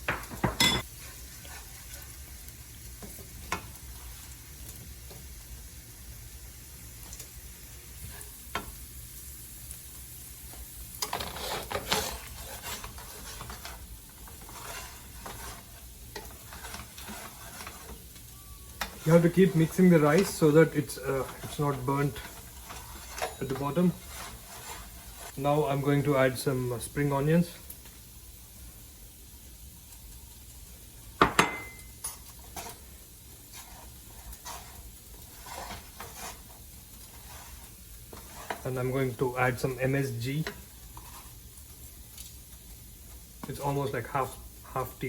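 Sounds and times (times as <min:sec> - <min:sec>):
rice sizzling in a pan: 0:00.0 - 0:45.0
spatula scraping a pan: 0:00.1 - 0:05.4, 0:07.6 - 0:27.1, 0:31.2 - 0:45.0
metal utensil knocking on pan: 0:31.2 - 0:32.2.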